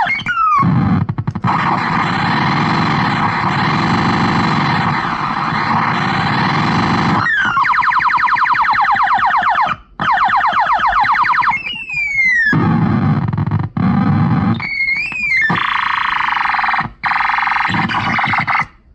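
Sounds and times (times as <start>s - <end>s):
electronic falling zaps: 0.0s - 12.3s
steady buzzing tone: 0.0s - 18.9s.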